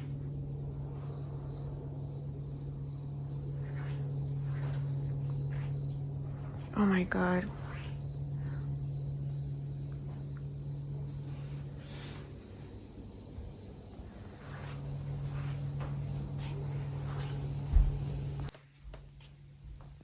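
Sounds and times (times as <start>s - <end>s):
low hum and rumble: 0.0s - 18.5s
cricket chirping: 0.0s - 20.0s.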